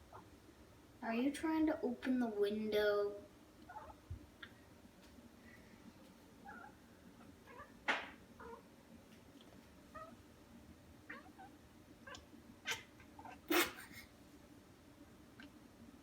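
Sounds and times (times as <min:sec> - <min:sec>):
cat meowing: 0:07.4 - 0:07.7, 0:10.0 - 0:10.2, 0:11.1 - 0:13.8.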